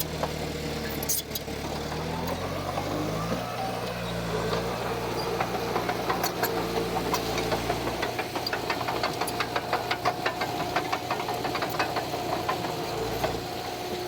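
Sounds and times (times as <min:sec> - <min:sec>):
diesel engine of heavy machinery: 0:00.0 - 0:14.0
sharp metal clanks and rattles: 0:04.5 - 0:13.5.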